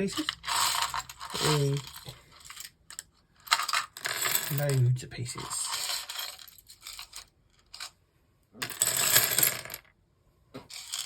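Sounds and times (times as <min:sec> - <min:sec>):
plastic toy bricks clattering: 0:00.0 - 0:04.7, 0:10.7 - 0:11.0.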